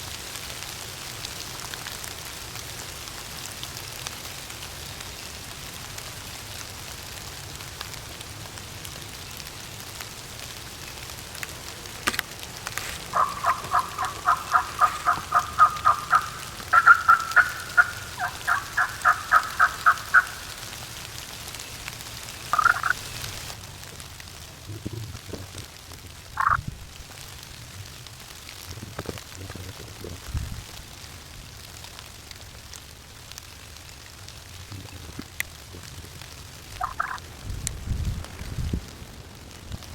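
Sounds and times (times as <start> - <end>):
rain hiss: 0.0 - 39.9
turkey yelping: 12.8 - 20.7, 22.5 - 23.0, 26.4 - 26.6, 36.8 - 37.2.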